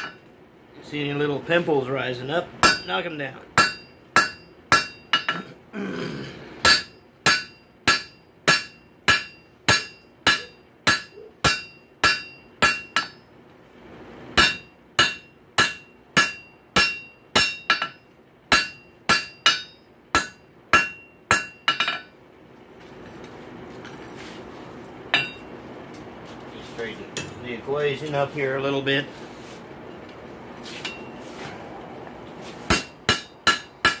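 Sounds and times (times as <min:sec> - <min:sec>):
hammer ringing on hot steel: 0:02.6 - 0:05.5, 0:06.6 - 0:13.3, 0:14.4 - 0:22.2, 0:25.1 - 0:25.5, 0:32.7 - 0:34.0.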